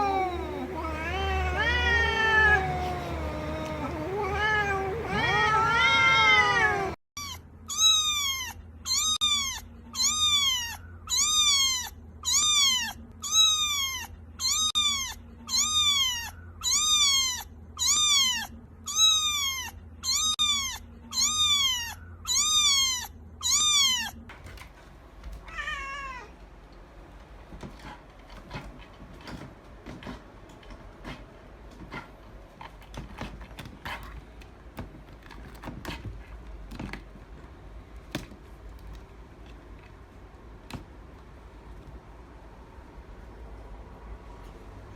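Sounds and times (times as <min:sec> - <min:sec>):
cat meowing: 0:00.0 - 0:24.3, 0:25.4 - 0:26.4.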